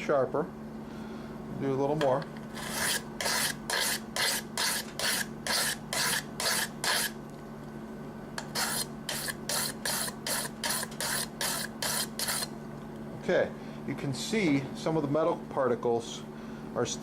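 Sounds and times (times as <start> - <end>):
knife scraping on sharpening stone: 2.6 - 7.2, 8.4 - 12.5.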